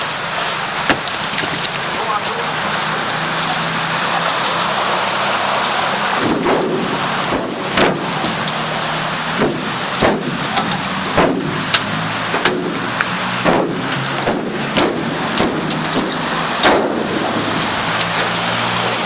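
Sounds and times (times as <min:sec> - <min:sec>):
heavy rain: 0:00.0 - 0:19.0
sharp knocks: 0:00.9 - 0:01.6, 0:06.2 - 0:08.6, 0:09.4 - 0:17.5
steady low hum: 0:06.2 - 0:17.9.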